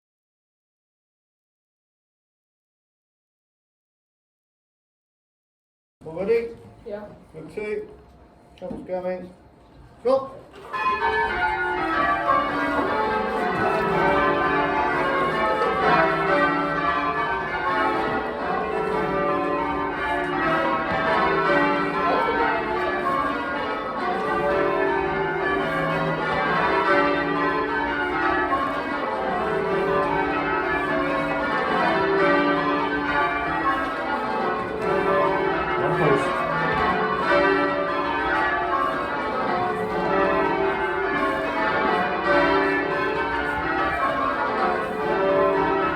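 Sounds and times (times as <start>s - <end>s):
church bells ringing rounds: 10.6s - 45.9s.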